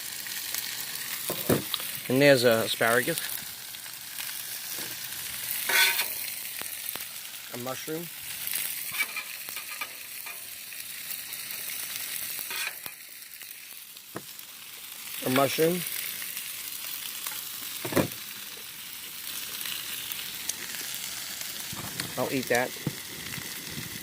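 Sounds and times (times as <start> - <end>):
food sizzling on a griddle: 0.0 - 24.0
knocks and scrapes on griddle: 1.3 - 1.9, 5.6 - 6.3, 8.9 - 10.5, 12.4 - 13.0, 17.8 - 18.2.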